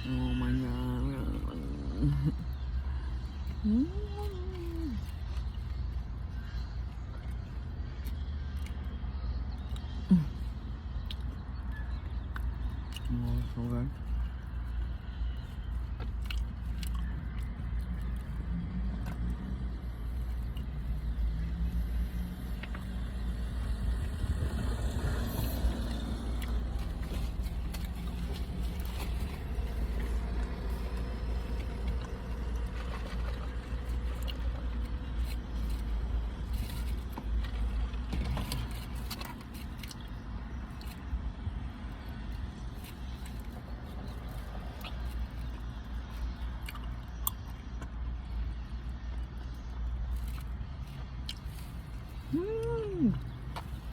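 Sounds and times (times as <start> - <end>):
car engine rumble: 0.0 - 53.9
chewing clicks: 10.7 - 19.5, 20.2 - 21.2, 25.5 - 35.9, 42.3 - 48.5.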